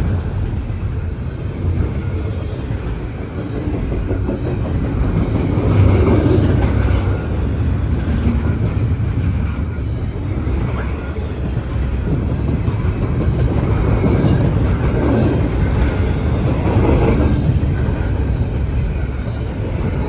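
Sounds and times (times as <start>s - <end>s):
freight train wheels rumbling: 0.0s - 20.0s.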